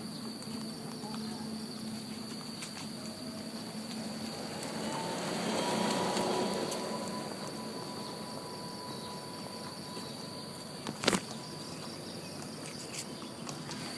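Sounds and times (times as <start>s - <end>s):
insects droning: 0.0s - 13.9s.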